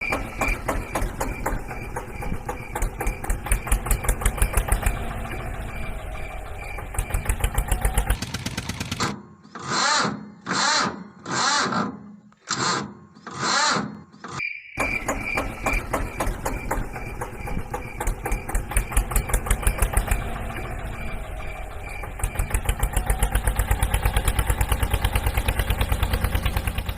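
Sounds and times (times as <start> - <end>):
tractor engine puttering: 0.0 - 12.9, 13.5 - 26.9.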